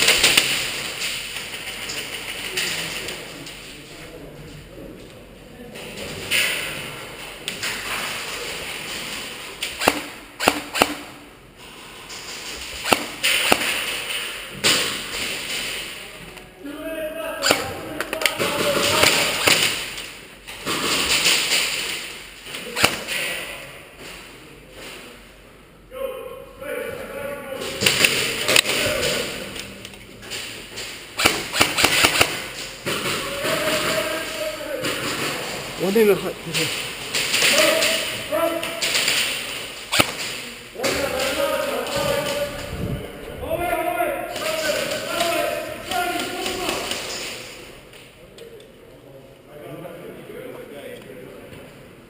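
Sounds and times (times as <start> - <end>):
airsoft guns firing: 0.0 - 3.0, 8.9 - 11.3, 12.6 - 15.9, 17.4 - 23.5, 30.8 - 36.0, 36.6 - 42.6
airsoft gun shots: 9.7 - 11.2, 12.8 - 15.0, 22.7 - 23.2, 31.2 - 33.9, 38.8 - 40.4.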